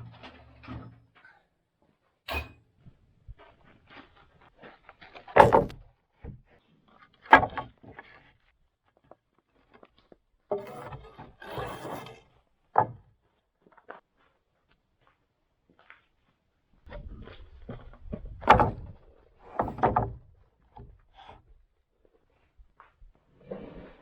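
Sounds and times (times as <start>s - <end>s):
wooden boards knocking and thumping: 5.4s - 6.4s, 7.3s - 8.0s, 17.7s - 21.0s.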